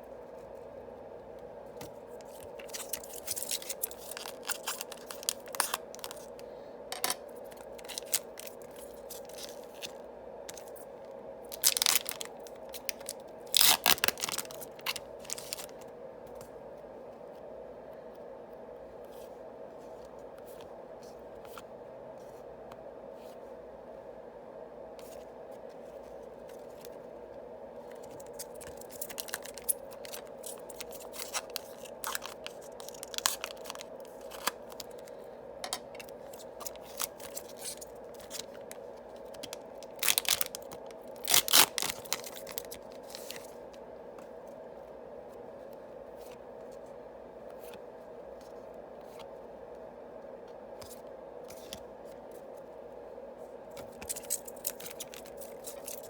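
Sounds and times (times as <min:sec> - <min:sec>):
faint steady hum: 0:00.0 - 0:56.0
wrappers crackling and tearing: 0:02.2 - 0:06.3, 0:07.5 - 0:10.6, 0:11.5 - 0:15.8, 0:28.0 - 0:35.1, 0:36.0 - 0:43.6, 0:54.0 - 0:56.0.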